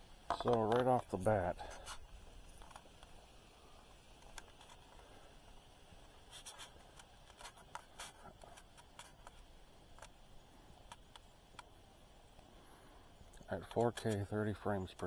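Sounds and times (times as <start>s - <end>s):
faint clicks and taps: 0.3s - 1.0s, 1.8s - 3.2s, 3.8s - 12.5s, 13.2s - 14.3s.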